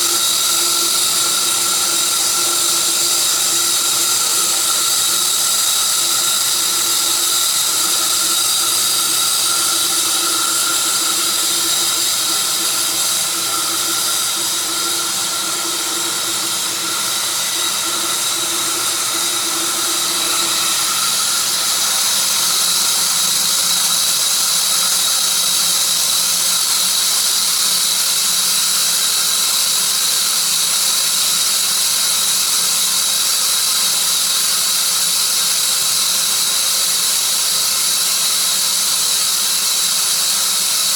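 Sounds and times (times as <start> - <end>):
loud hiss: 0.0 - 23.6
sawmill blade whine: 0.0 - 28.0.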